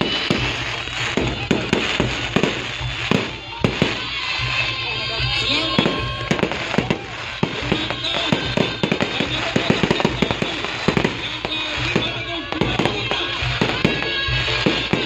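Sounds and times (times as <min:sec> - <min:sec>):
fireworks bangs and pops: 0:00.0 - 0:15.0.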